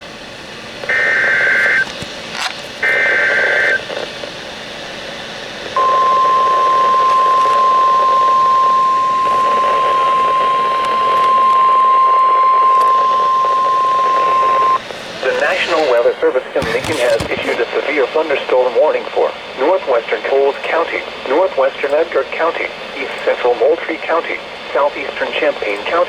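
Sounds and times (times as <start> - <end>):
radio hiss: 0.6 - 26.0
warbling data tones: 5.8 - 16.0.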